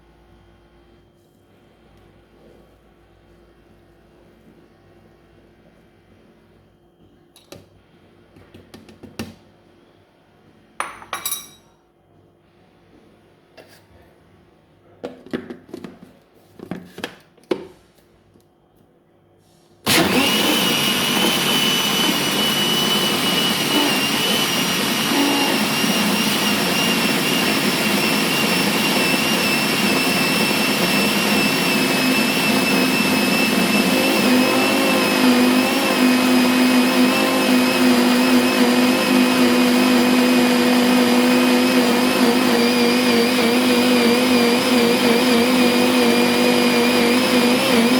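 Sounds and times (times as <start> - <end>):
kitchen mixer motor whine: 19.8 - 47.9.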